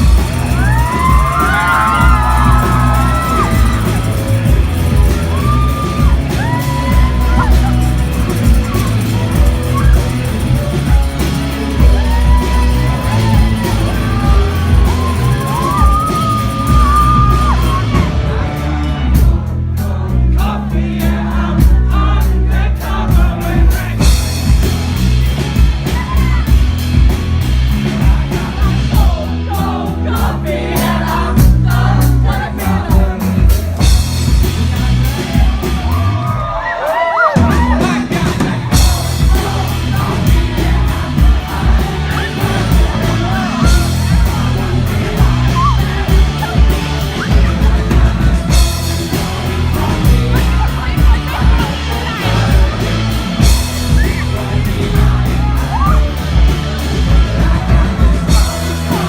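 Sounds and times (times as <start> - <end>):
person singing: 0.0 - 24.6, 36.8 - 59.0
bass and drum beat: 0.0 - 59.0.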